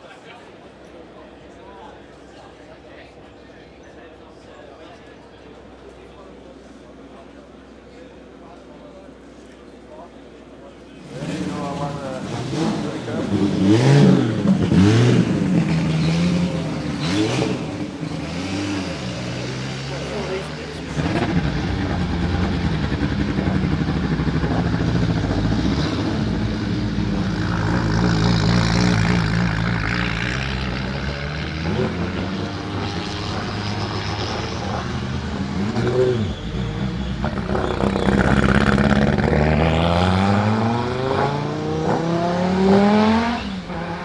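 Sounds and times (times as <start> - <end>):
race car engine running hard: 10.8 - 44.0.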